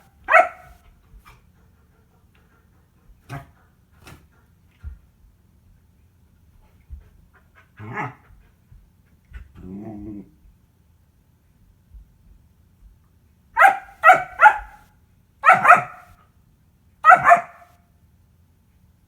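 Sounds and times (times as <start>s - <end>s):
puppy growling bark: 0.3s - 0.8s, 7.8s - 8.2s, 13.6s - 14.8s, 15.4s - 16.1s, 17.0s - 17.7s
puppy yelping and barking: 0.3s - 0.8s, 13.6s - 14.8s, 15.4s - 16.1s, 17.0s - 17.7s.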